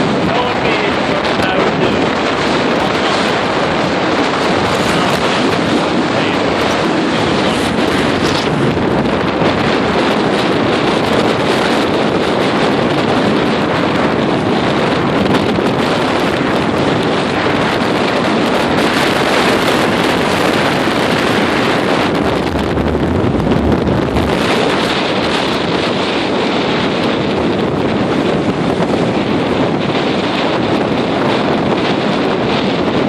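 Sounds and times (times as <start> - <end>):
strong wind buffeting microphone: 0.0 - 33.0
waves surging against pier: 0.0 - 33.0.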